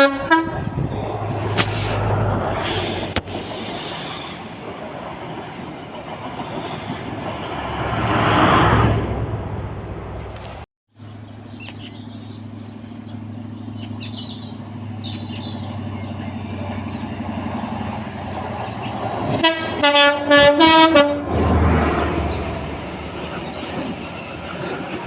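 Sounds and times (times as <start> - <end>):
train chime horn blasts: 0.0 - 0.7, 19.4 - 21.3
rush of train passing: 0.0 - 11.4, 12.0 - 25.0
train engine drone: 0.0 - 25.0.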